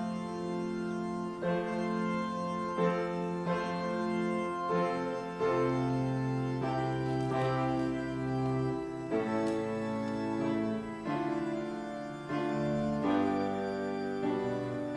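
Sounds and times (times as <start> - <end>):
organ playing sustained chords: 0.0 - 14.9.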